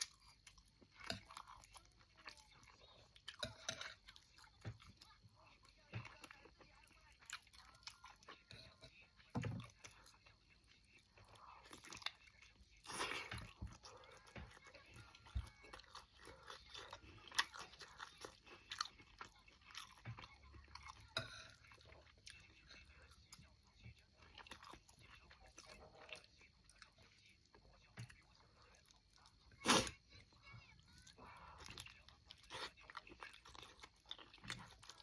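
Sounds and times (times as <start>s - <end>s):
person chewing and biting: 15.7s - 20.3s.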